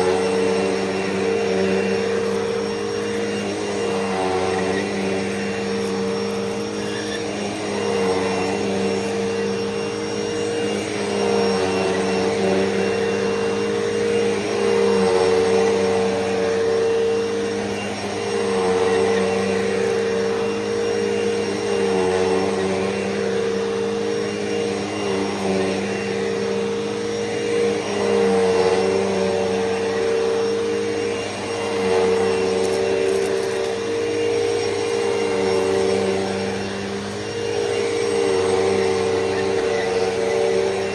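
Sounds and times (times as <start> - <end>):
upright vacuum cleaner on carpet: 0.0 - 40.9.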